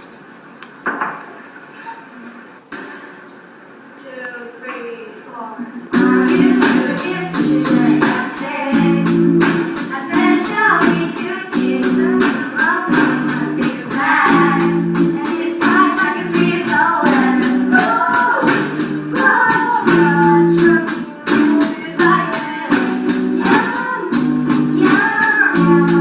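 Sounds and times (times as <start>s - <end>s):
held backing chords: 5.9s - 26.0s
voices singing: 5.9s - 26.0s.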